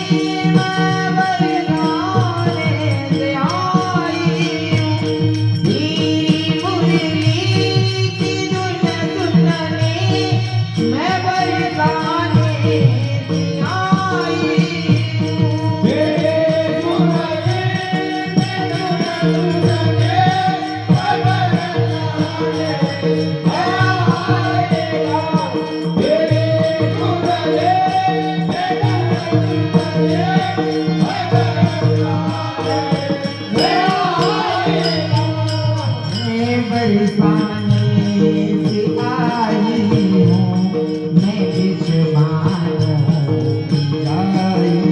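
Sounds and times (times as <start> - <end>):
person singing devotional song: 0.0 - 44.9
rhythmic percussion: 0.0 - 44.9.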